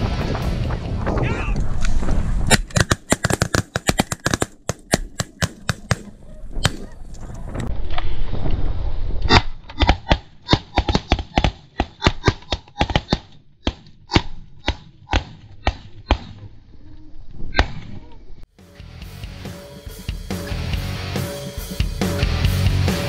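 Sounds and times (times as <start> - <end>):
shotgun blasts: 2.5 - 7.0
rock music: 18.6 - 23.0.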